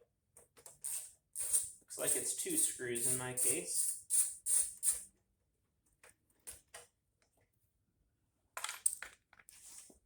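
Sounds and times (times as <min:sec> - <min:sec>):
hand tool rasping bursts: 0:00.8 - 0:05.0.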